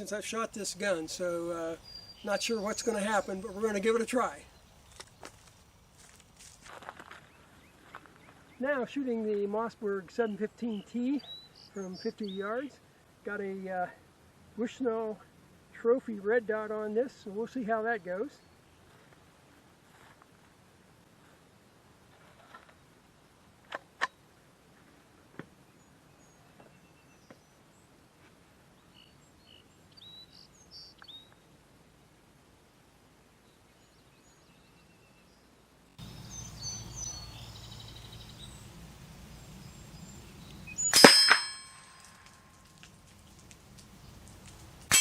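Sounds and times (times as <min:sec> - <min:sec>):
birds chirping: 0:00.0 - 0:05.6, 0:36.0 - 0:45.0
steel target ringing: 0:40.8 - 0:42.2.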